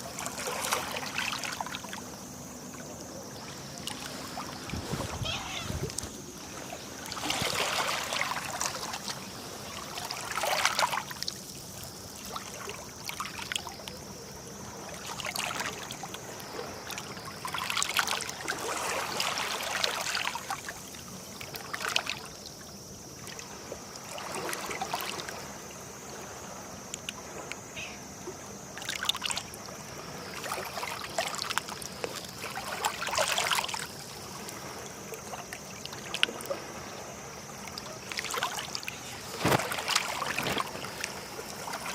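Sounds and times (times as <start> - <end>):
waves lapping on shore: 0.0 - 41.9.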